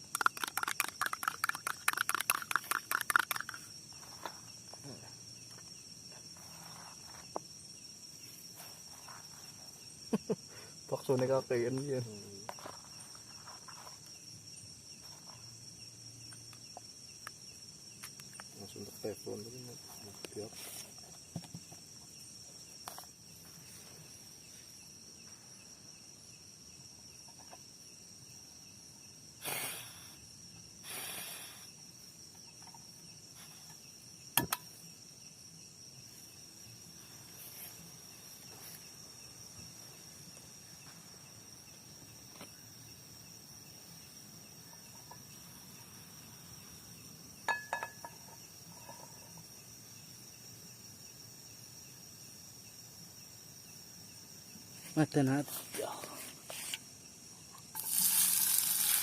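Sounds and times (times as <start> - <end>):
night insects trilling: 0.0 - 59.0.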